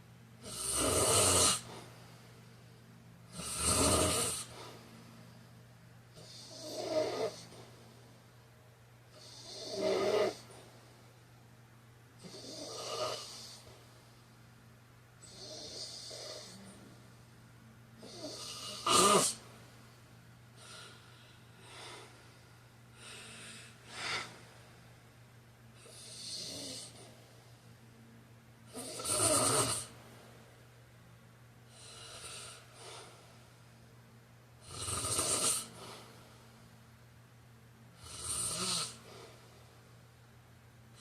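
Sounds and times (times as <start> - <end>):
steady low hum: 0.0 - 41.0
man snoring: 0.4 - 1.9, 3.3 - 4.6, 6.2 - 7.6, 9.2 - 10.5, 12.2 - 13.7, 15.2 - 16.9, 18.0 - 19.4, 25.8 - 27.0, 28.7 - 29.9, 31.7 - 33.0, 34.6 - 36.0, 38.0 - 39.1.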